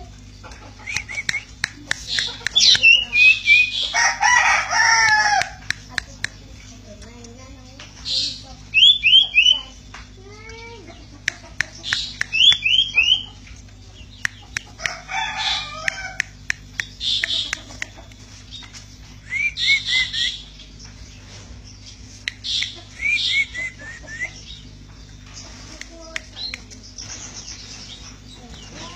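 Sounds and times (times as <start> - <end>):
bird chattering song: 0.0 - 28.9
sharp clicks: 0.9 - 3.6, 5.0 - 7.9, 11.2 - 12.8, 15.8 - 18.8.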